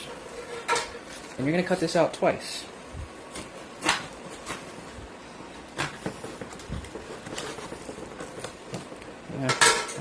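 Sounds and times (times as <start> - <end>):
scissors cutting cardboard: 5.7 - 9.1.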